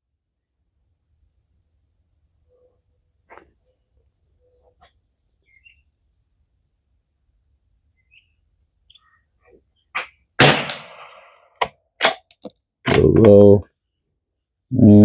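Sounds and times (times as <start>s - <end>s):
small birds chirping: 2.5s - 6.0s, 7.9s - 10.0s
rifle shot: 10.4s - 11.4s.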